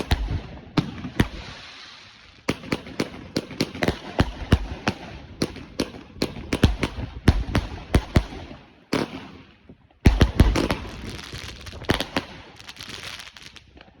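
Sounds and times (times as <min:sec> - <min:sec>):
firework crackling hiss: 0:01.2 - 0:02.5, 0:10.7 - 0:13.8
firework bangs: 0:10.0 - 0:13.8.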